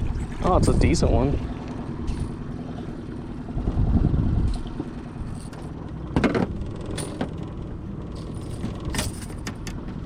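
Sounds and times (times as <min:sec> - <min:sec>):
steady low rumble: 0:00.0 - 0:10.0
fishing tackle rattling: 0:04.5 - 0:10.0.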